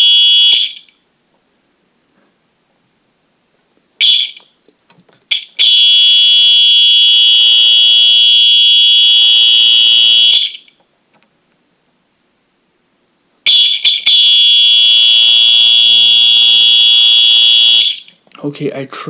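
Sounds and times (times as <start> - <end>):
fire alarm horn blaring: 0.0 - 0.9, 4.0 - 4.4, 5.3 - 10.6, 13.5 - 18.1.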